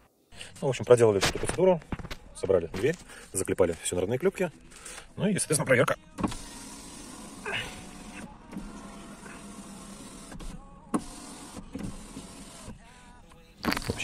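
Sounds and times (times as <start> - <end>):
electric car window motor: 6.2 - 12.8.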